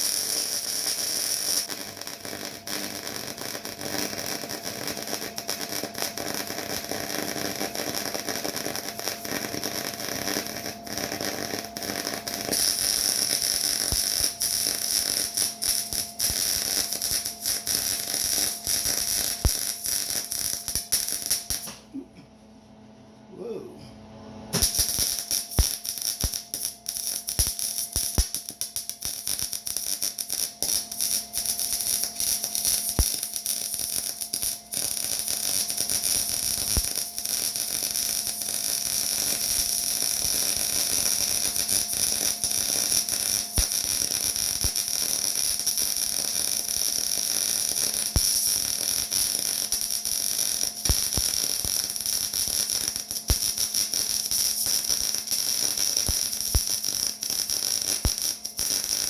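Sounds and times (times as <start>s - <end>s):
welding arc crackling: 0.0s - 21.8s, 24.5s - 59.0s
faint hum: 8.7s - 29.0s.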